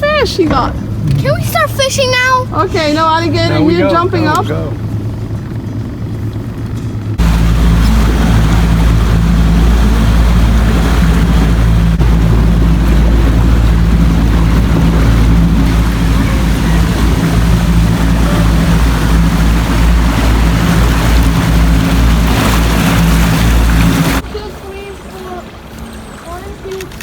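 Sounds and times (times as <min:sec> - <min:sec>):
boat motor running: 0:00.0 - 0:27.0
rushing water: 0:00.0 - 0:27.0
wind rumbling on microphone: 0:04.7 - 0:25.7.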